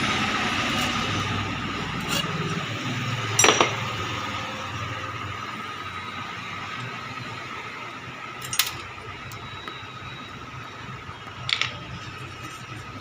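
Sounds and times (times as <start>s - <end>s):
small tools and parts clinking: 3.3s - 3.8s, 8.4s - 8.9s, 11.4s - 12.6s.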